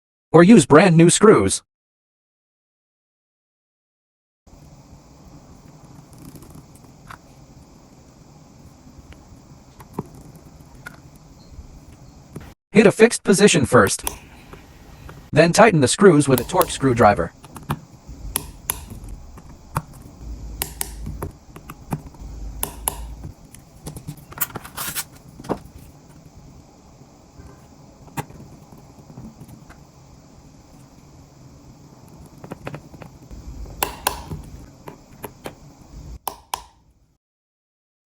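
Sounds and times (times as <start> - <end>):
low handling rumble: 18.0 - 23.4, 33.3 - 34.6.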